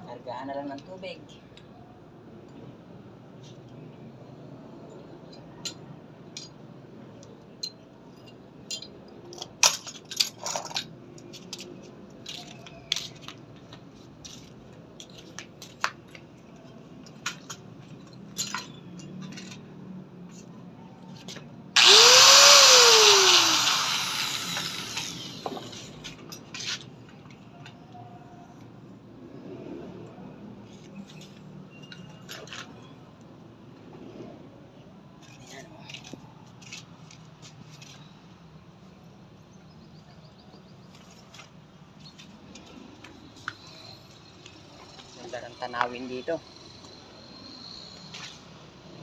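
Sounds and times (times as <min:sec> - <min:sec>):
small electric motor spinning: 0:21.8 - 0:25.9.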